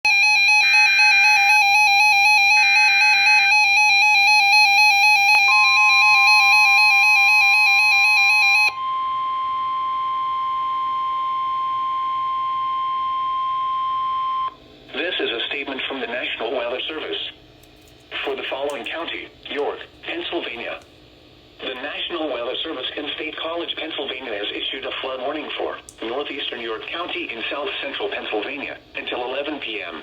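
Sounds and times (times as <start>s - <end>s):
steady warning alarm tone: 0.0s - 14.6s
warbling electronic alarm: 0.0s - 14.6s.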